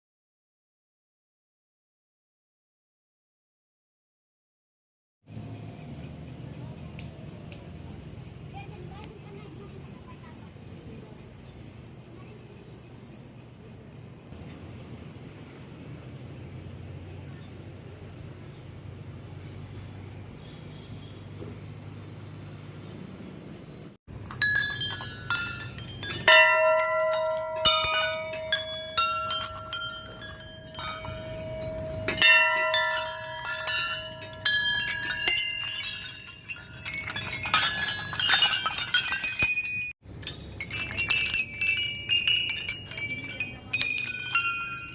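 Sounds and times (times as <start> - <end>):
metal bells ringing: 6.6 - 13.3, 24.1 - 44.9.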